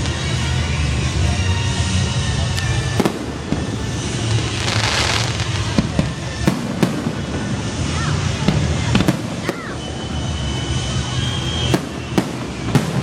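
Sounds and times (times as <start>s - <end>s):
fireworks crackling: 0.0s - 13.0s
fireworks hissing burst: 0.0s - 13.0s
firework shells bursting: 3.0s - 10.2s, 11.3s - 13.0s.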